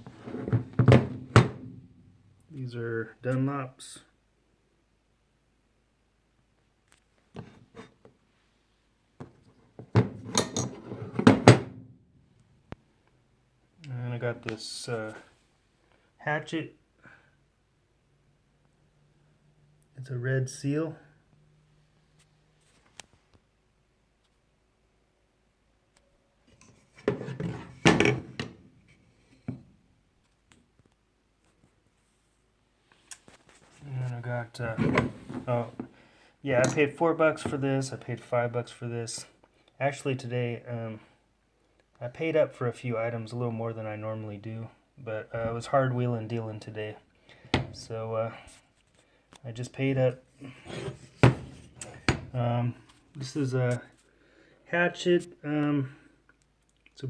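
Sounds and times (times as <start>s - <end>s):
hand tools scraping and clattering: 9.8s - 11.4s, 26.5s - 29.6s, 50.4s - 52.4s.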